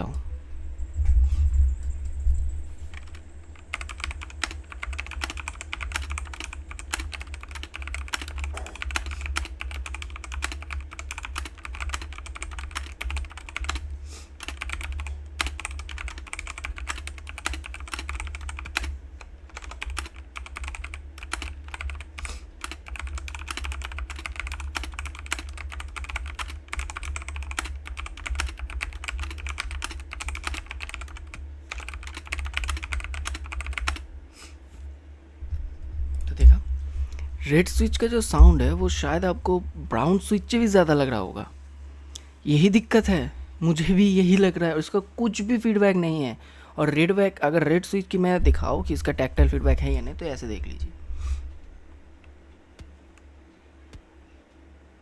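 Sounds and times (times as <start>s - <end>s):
steady low hum: 0.0s - 55.0s
mechanical keyboard typing: 2.8s - 34.1s.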